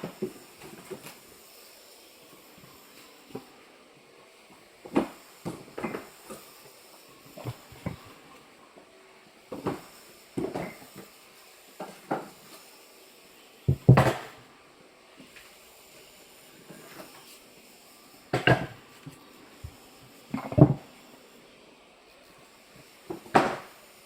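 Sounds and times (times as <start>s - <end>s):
firewood knocking and clunking: 13.7s - 14.3s.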